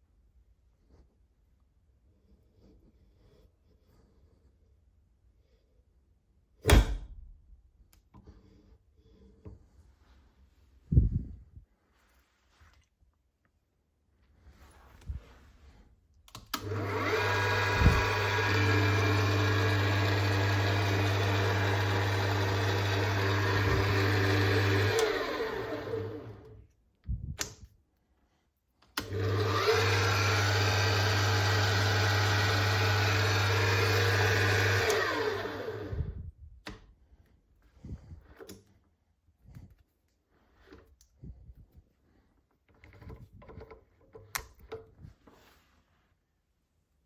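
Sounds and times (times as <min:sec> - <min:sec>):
milling machine motor running: 0:16.6 - 0:26.5, 0:29.0 - 0:35.9.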